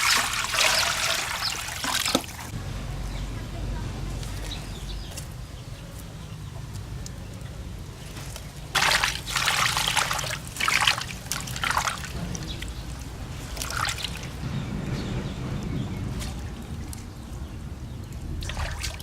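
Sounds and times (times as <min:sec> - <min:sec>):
water pouring and splashing: 0:00.0 - 0:02.6, 0:08.3 - 0:14.5, 0:18.1 - 0:19.0.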